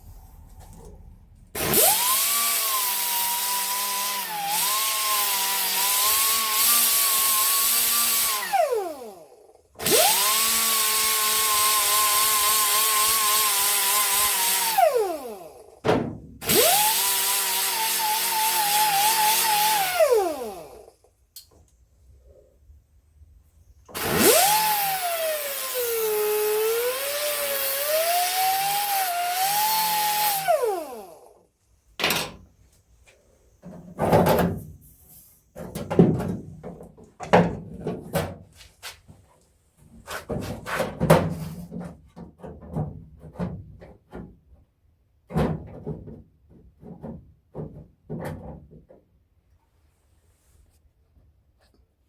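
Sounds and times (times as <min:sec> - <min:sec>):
power grinder on sheet metal: 0:01.6 - 0:15.8, 0:16.4 - 0:20.9, 0:23.9 - 0:31.3.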